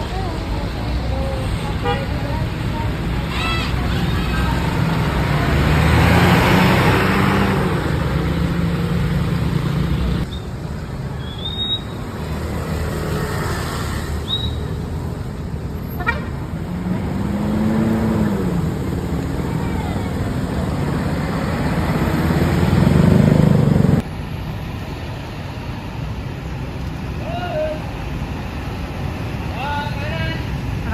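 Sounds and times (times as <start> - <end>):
buses running past: 0.0 - 30.9
road traffic: 0.0 - 30.9
horn toots: 3.2 - 4.5, 15.8 - 16.4.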